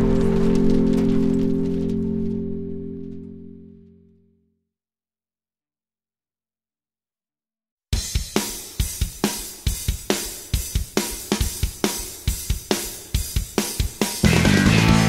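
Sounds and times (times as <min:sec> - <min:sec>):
rock drum kit: 0:08.0 - 0:15.0
rock band with distorted guitar: 0:09.2 - 0:15.0.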